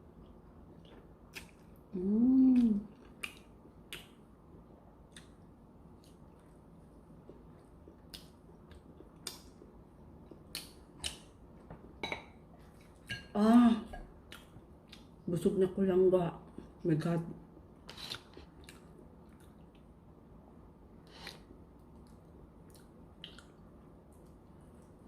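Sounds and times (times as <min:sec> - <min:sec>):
wet mouth chewing sounds: 0:00.2 - 0:01.8, 0:02.6 - 0:04.2, 0:21.1 - 0:24.2
person humming: 0:01.9 - 0:02.9.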